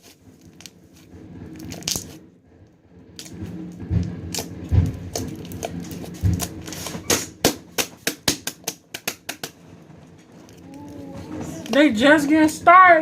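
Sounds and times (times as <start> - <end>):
firecrackers popping: 3.0 - 12.2.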